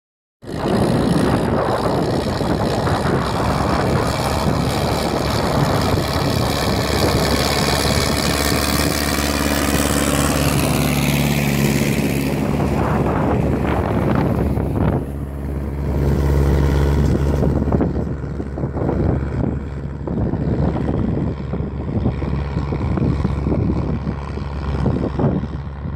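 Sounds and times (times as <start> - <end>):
tractor diesel engine running: 0.5 - 25.9.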